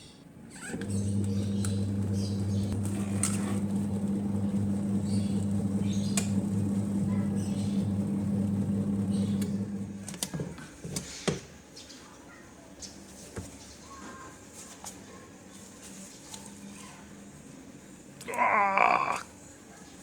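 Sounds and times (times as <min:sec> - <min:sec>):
small electric motor humming: 0:00.7 - 0:09.9
clicks: 0:05.4 - 0:06.8.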